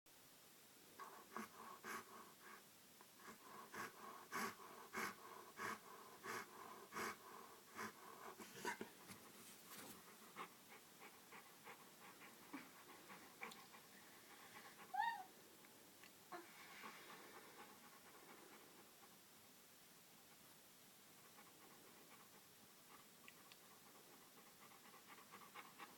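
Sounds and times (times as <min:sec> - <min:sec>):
dog whining: 0:14.7 - 0:15.4.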